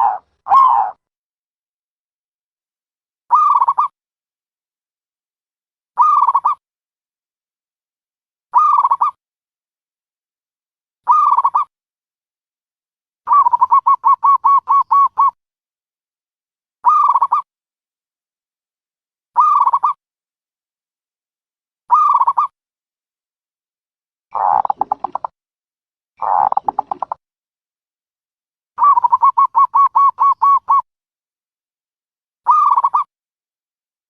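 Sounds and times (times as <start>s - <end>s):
dove cooing: 0.0s - 1.0s, 13.3s - 15.4s, 24.4s - 25.3s, 26.2s - 27.2s, 28.8s - 30.8s.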